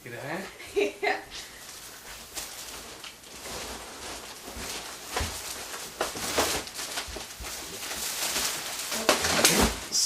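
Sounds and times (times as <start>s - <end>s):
packaging rustling and scraping: 1.6s - 10.0s.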